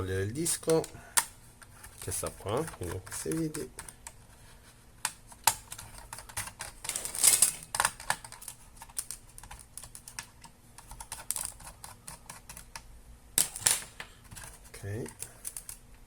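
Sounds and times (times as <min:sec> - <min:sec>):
handling scrape: 0:06.8 - 0:07.7.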